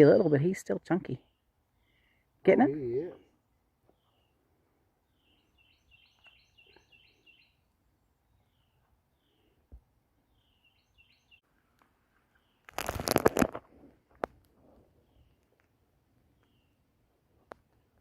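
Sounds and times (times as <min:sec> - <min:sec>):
small bird chirping: 0:03.9 - 0:04.4, 0:05.1 - 0:07.6, 0:10.3 - 0:11.4.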